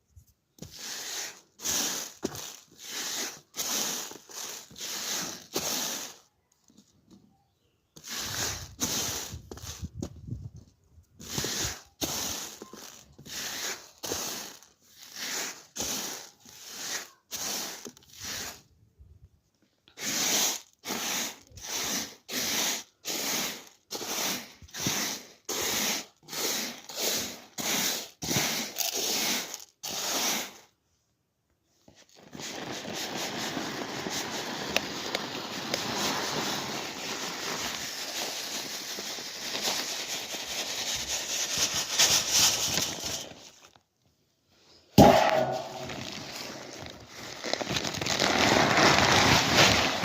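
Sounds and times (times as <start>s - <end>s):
grain swishing in hands: 0.6s - 6.2s, 45.0s - 50.0s.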